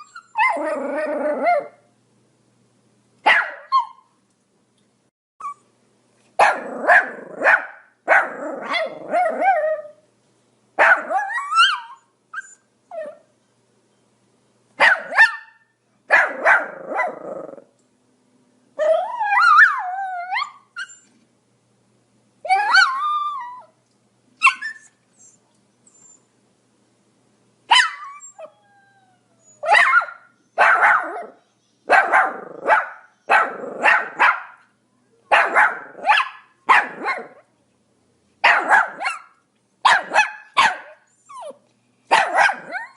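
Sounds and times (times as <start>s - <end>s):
small dog barking: 3.2s - 4.1s, 6.4s - 9.6s, 10.8s - 12.0s, 14.8s - 17.3s, 27.7s - 28.1s, 29.6s - 34.7s, 35.3s - 37.5s, 38.4s - 42.9s.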